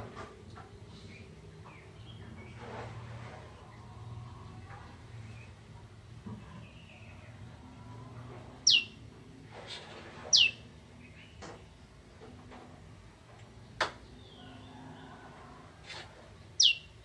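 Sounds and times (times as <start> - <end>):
bird calling descending notes: 8.6 - 9.0, 10.3 - 10.6, 16.6 - 17.0
short sharp bird chips: 8.7 - 8.9.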